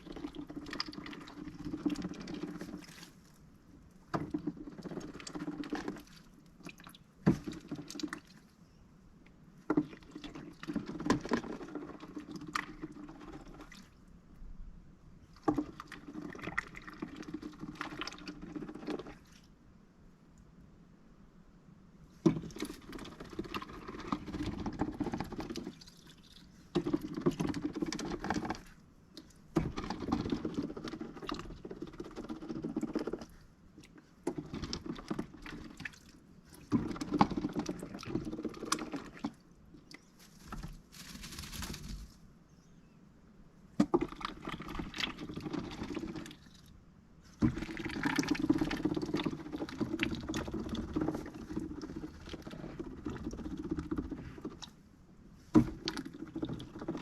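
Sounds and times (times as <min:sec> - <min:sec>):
duck rustling and pattering clicks: 0:39.9 - 0:42.2.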